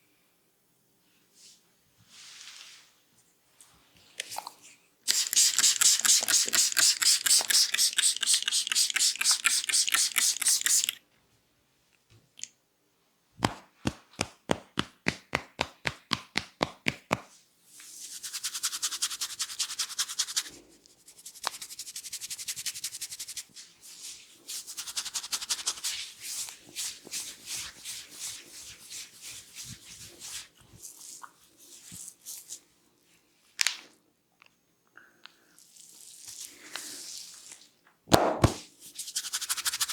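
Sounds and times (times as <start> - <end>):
hands rubbing hair: 5.1 - 11.0, 13.4 - 32.5, 38.8 - 39.9.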